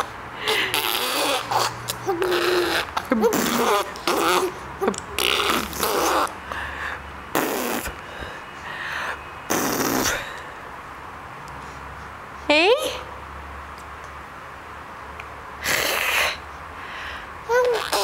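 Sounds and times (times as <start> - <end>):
baby blowing raspberries: 0.0 - 6.6, 7.3 - 8.2, 9.5 - 10.4, 15.6 - 16.4, 17.5 - 18.0
baby gliding voice sounds: 0.0 - 6.6, 17.4 - 18.0.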